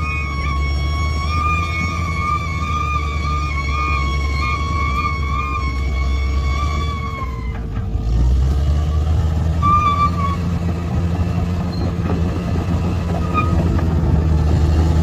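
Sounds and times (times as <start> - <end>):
short high squeals: 0.0 - 7.8, 9.6 - 10.5
bulldozer diesel engine running: 0.0 - 15.0.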